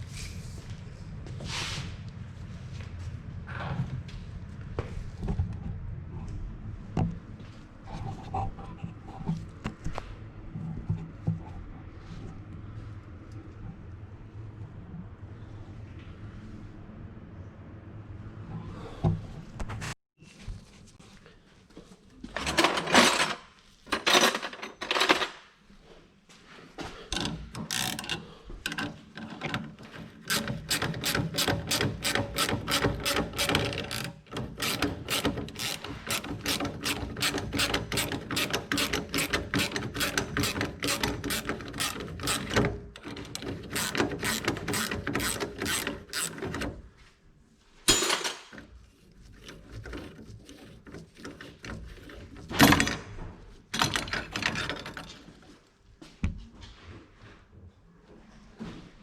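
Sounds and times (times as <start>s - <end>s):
ratchet wrench clicking: 30.3s - 46.6s.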